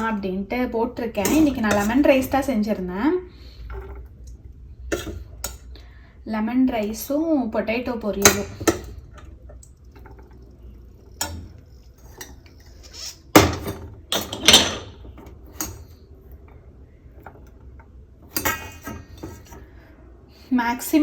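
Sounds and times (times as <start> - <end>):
dishes and utensils clinking: 1.2 - 2.4, 4.9 - 5.7, 11.2 - 16.0, 18.2 - 19.7.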